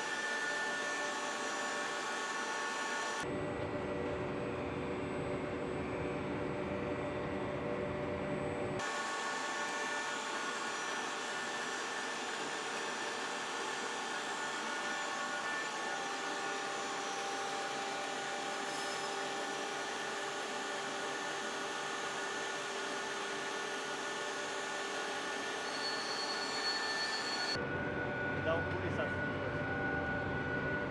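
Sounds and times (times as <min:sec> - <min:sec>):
machine tool whirring: 0:08.8 - 0:27.6
high whining tones: 0:25.3 - 0:30.9.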